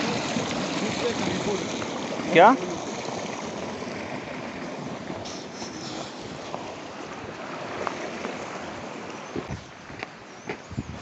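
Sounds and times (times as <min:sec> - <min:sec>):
river rushing: 0:00.0 - 0:10.4.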